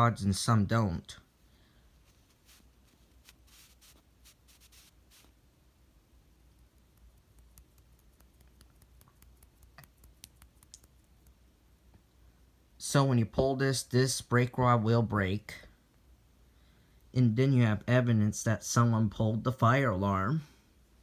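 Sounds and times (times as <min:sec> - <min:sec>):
light rustles: 0:02.0 - 0:05.3
faint clicks: 0:06.5 - 0:11.4.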